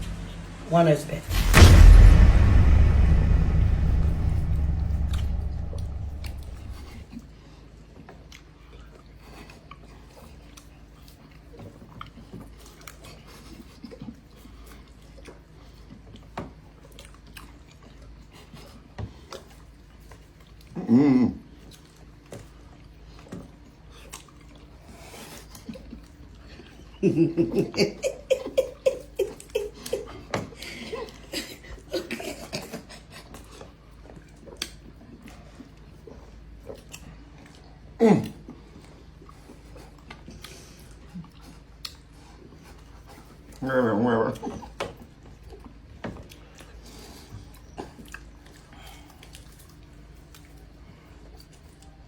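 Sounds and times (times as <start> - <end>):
low steady hum: 0.0 - 7.0
faint chewing: 33.1 - 43.6, 44.2 - 52.0
people chewing: 45.4 - 52.0.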